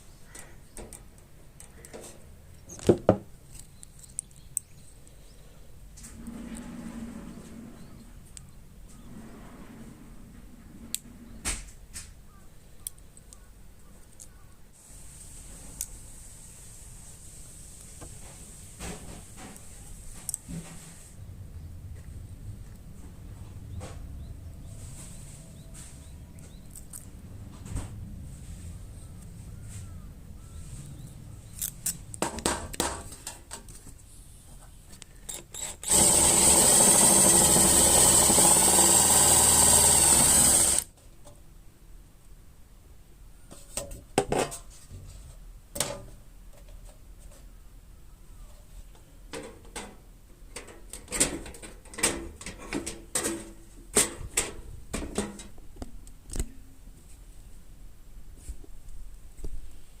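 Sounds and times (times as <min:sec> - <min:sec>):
power tool running: 0:35.6 - 0:40.9.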